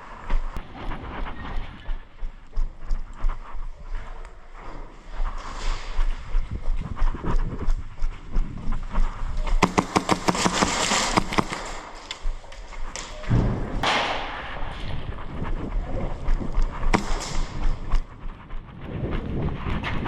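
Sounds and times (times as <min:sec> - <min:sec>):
airsoft gun firing sharp snaps: 0:09.6 - 0:12.4, 0:17.0 - 0:18.0.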